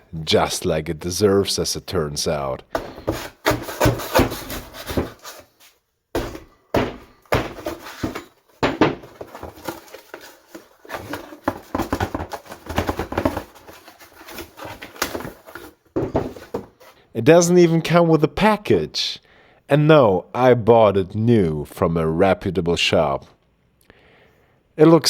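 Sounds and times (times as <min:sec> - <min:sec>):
cardboard box being handled: 0:02.8 - 0:05.5, 0:09.0 - 0:17.0.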